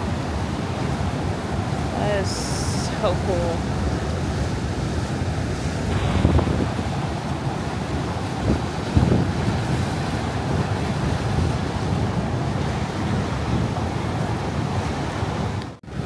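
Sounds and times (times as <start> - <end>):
waterfall rushing: 0.0 - 12.0
wind buffeting microphone: 3.2 - 16.0.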